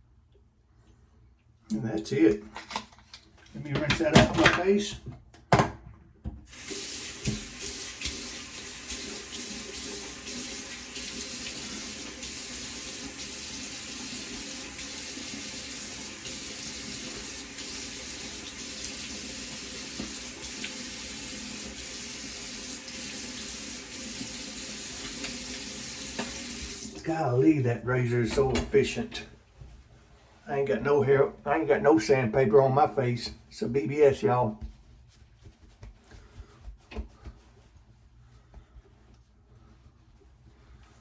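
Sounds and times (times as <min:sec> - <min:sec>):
water running from a tap: 0:06.5 - 0:27.1.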